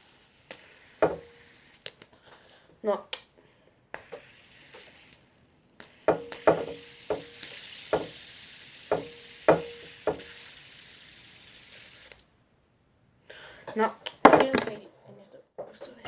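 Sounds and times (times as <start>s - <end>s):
fidget spinner whirring: 0.0s - 12.4s.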